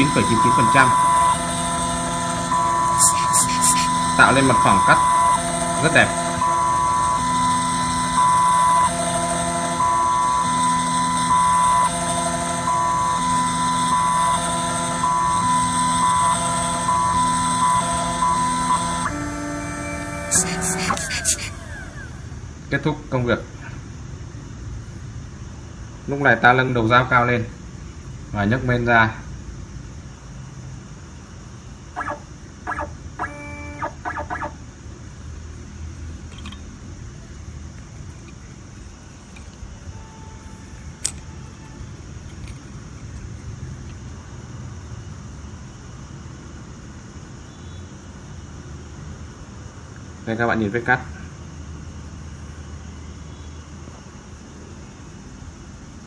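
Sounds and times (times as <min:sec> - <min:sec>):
milling machine whining: 0:00.0 - 0:22.5
low hum: 0:00.0 - 0:22.6
hen clucking: 0:32.0 - 0:34.6.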